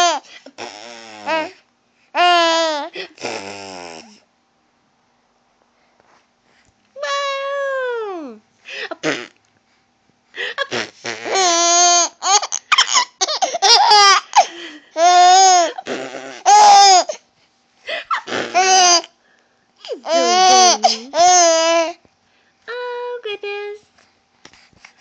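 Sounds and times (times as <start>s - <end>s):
baby giggling: 10.6s - 17.1s, 20.0s - 21.7s.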